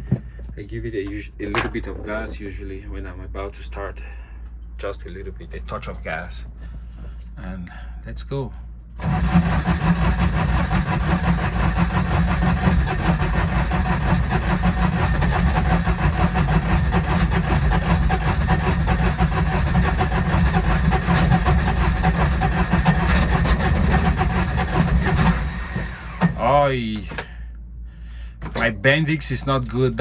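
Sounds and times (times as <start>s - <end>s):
starter cranking engine: 0.0s - 2.4s, 9.0s - 27.4s, 28.4s - 30.0s.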